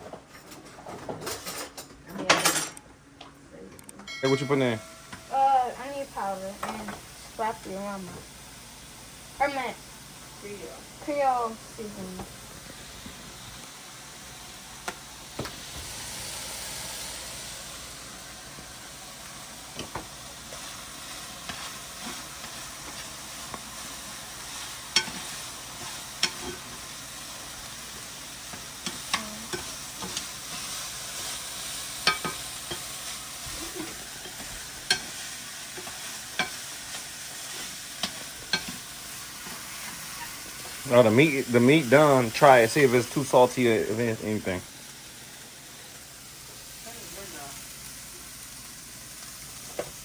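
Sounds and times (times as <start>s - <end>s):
meat sizzling in a pan: 4.5s - 50.0s
utensil scraping pan: 24.9s - 26.7s.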